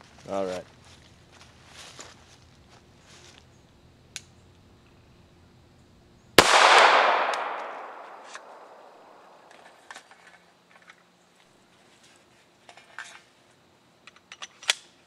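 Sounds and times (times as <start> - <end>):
pistol shot with echo: 6.4 - 9.5.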